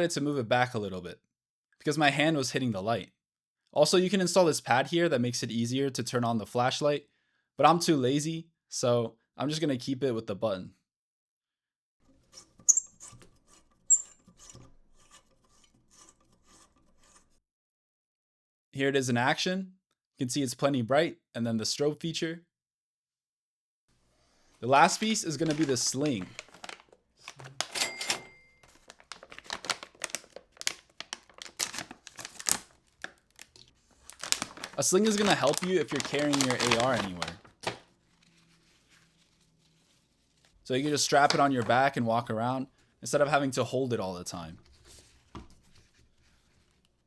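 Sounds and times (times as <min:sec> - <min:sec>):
plastic packaging crinkling: 0:24.6 - 0:42.0.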